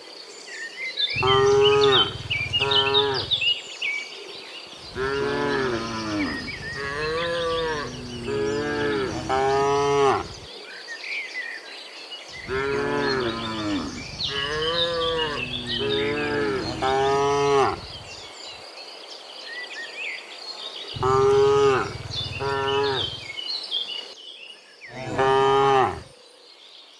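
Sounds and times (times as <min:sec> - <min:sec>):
faint bird chirps: 0:00.9 - 0:10.8, 0:12.4 - 0:18.6
cows mooing: 0:01.2 - 0:03.5, 0:04.9 - 0:10.5, 0:12.4 - 0:18.2, 0:21.0 - 0:23.3, 0:24.9 - 0:26.1.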